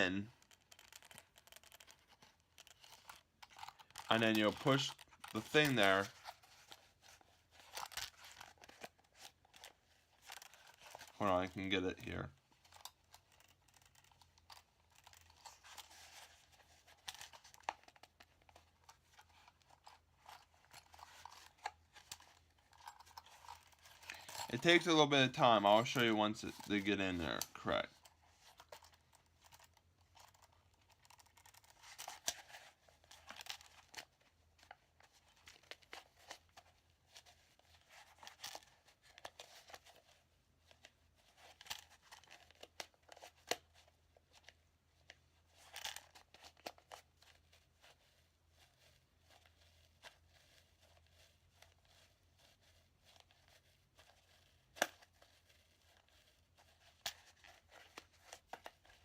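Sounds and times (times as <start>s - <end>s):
handcuffs clicking and scraping: 12.7s - 16.3s, 19.2s - 24.8s.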